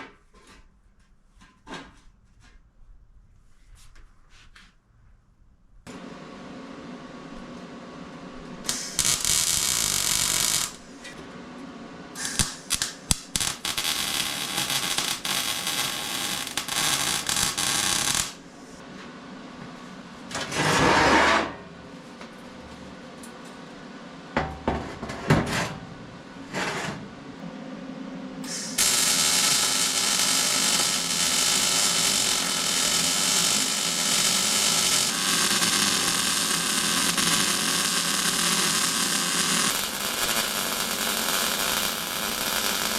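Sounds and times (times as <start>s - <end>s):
power tool or welder running: 8.6s - 11.2s, 12.2s - 18.8s, 28.4s - 42.9s
sharp crackles: 8.7s - 10.9s, 12.2s - 18.4s, 28.8s - 42.9s.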